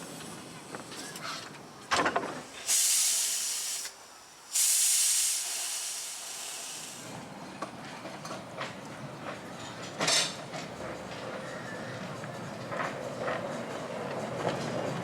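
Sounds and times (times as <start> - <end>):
steam locomotive hissing: 2.4 - 7.2.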